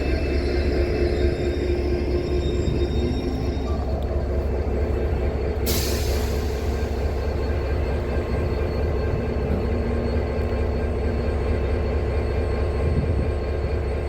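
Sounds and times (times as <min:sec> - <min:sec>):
diesel locomotive engine running: 0:00.0 - 0:14.0
air brakes hissing: 0:05.6 - 0:07.3.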